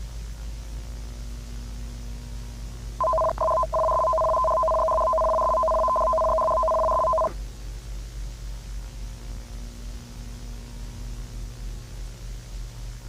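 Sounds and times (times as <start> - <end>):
steady hiss and hum: 0.0 - 13.0
two-tone emergency alert tone: 3.0 - 7.3.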